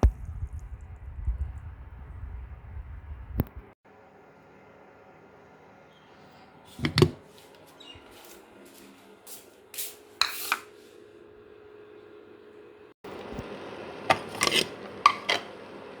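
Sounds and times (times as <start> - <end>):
utensils and dishes clattering: 14.1 - 15.5.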